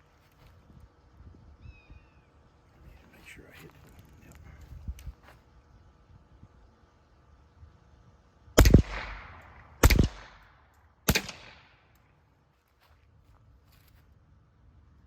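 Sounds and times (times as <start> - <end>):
suppressed pistol shots: 8.6 - 12.0.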